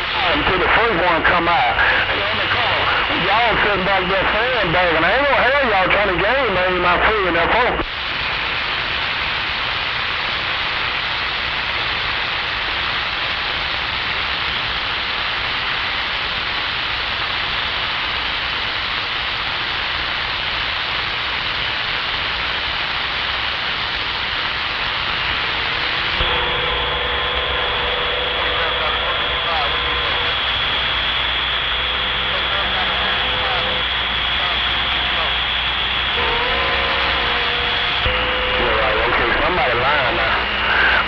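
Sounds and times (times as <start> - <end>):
radio static hiss: 0.0 - 41.0
low hum: 21.2 - 41.0
steady high tone: 25.0 - 41.0.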